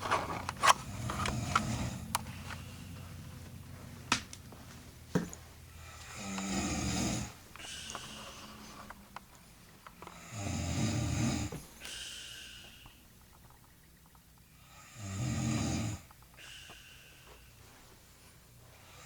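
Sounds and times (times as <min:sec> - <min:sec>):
woman snoring: 0:00.9 - 0:02.1, 0:05.8 - 0:09.1, 0:10.1 - 0:11.6, 0:14.6 - 0:16.6.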